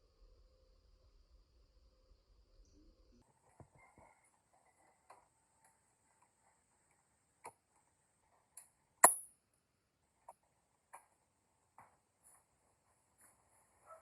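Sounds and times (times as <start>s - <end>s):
sharp loud click: 9.0s - 9.3s.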